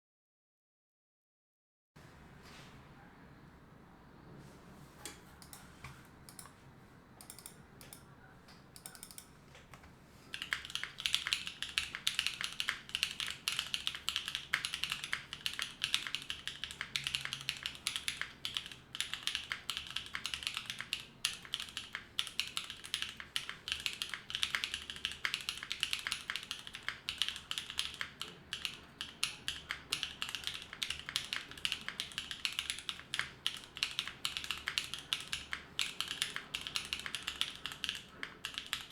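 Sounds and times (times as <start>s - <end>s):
typing on mechanical keyboard: 7.2s - 8.0s, 8.8s - 38.9s.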